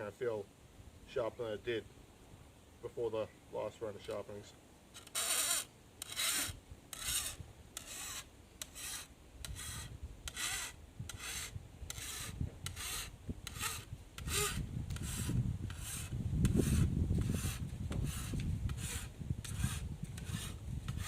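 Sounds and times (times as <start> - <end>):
file rasping on steel blade: 5.0 - 21.0.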